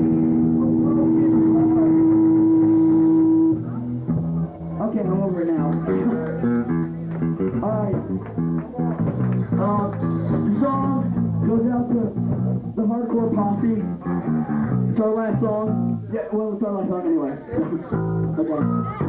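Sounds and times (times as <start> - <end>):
bass guitar: 0.0 - 16.2, 16.8 - 19.0
guitar: 0.0 - 19.0
person singing: 9.3 - 16.0.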